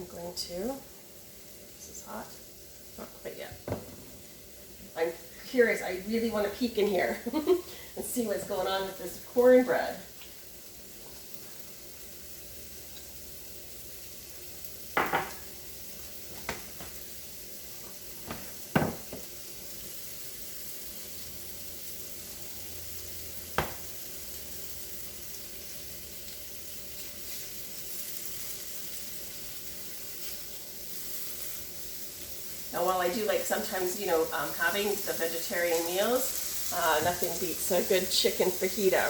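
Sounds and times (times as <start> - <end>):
chicken sizzling in oil: 0.1 - 39.0
utensils knocking on pans: 15.0 - 15.4.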